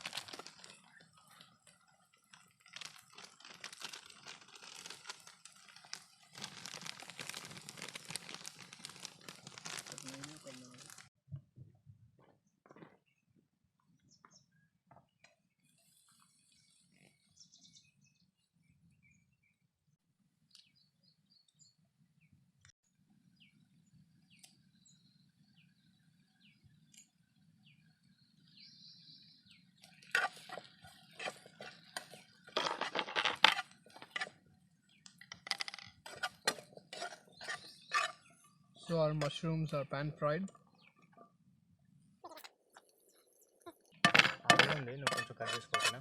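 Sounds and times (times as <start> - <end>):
utensil scraping in a frying pan: 2.3 - 11.1, 29.9 - 34.4, 35.4 - 38.5, 44.1 - 46.0.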